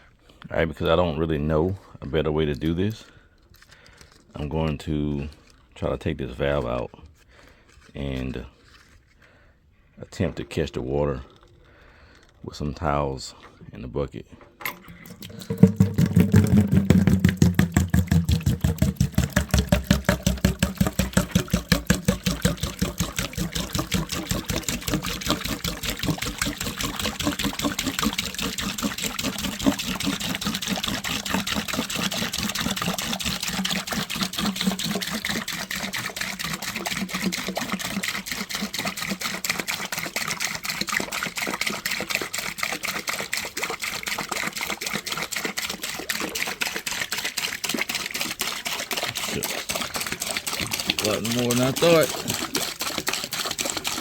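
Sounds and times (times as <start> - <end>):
water glugging into a bucket: 10.1 - 54.0.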